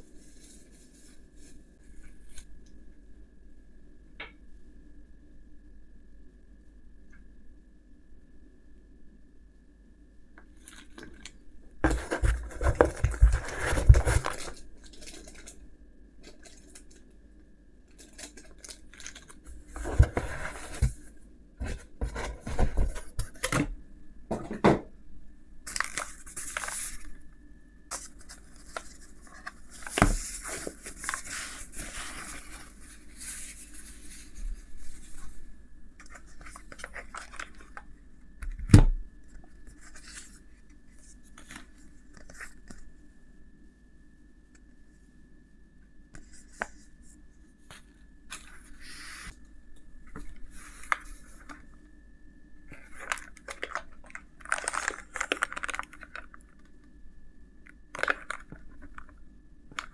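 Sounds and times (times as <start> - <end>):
packaging rustling and tearing: 10.6 - 17.1, 17.9 - 23.7, 25.7 - 27.2, 27.9 - 35.4, 36.0 - 37.9, 52.7 - 56.7, 57.9 - 59.9.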